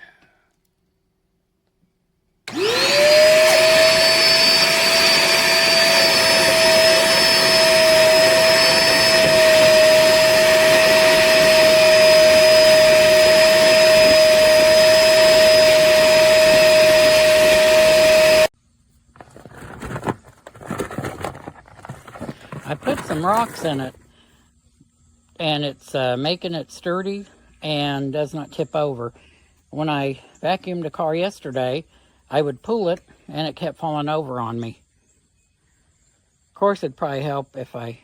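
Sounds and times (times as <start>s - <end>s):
shop vacuum motor whine: 2.5s - 18.5s, 22.2s - 24.0s.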